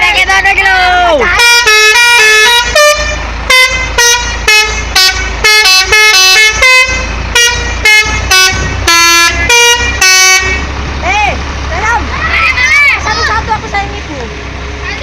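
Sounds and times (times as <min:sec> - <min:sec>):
musical vehicle horn honks: 0:01.3 - 0:10.7.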